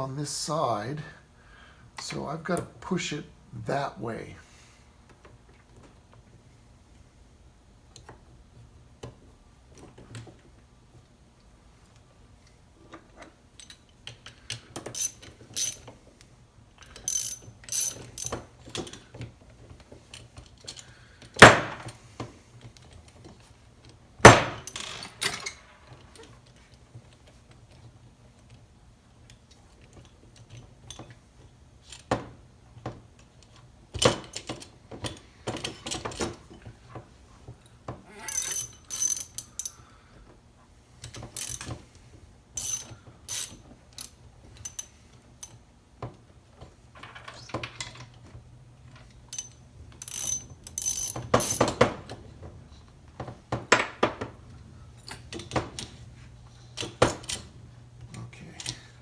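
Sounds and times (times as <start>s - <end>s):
sharp metal knocks: 21.4s - 21.9s, 24.3s - 24.8s.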